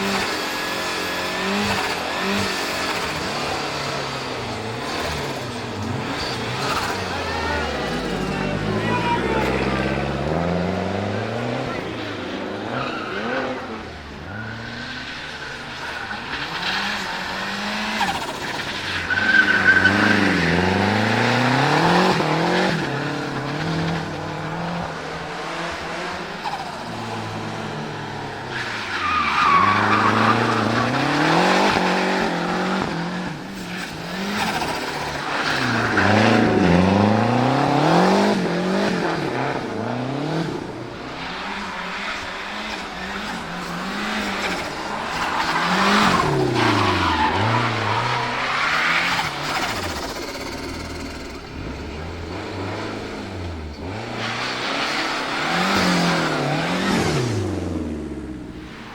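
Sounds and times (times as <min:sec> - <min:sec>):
car engine revving: 0:00.0 - 0:58.9
tyres squealing: 0:11.3 - 0:33.0, 0:40.9 - 0:56.8.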